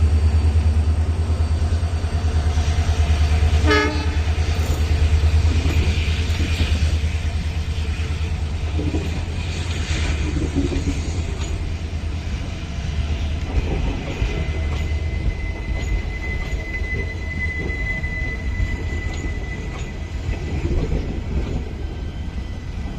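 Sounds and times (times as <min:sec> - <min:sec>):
train coaches rumbling past: 0:00.0 - 0:22.9
high wheel squeal: 0:14.0 - 0:22.9.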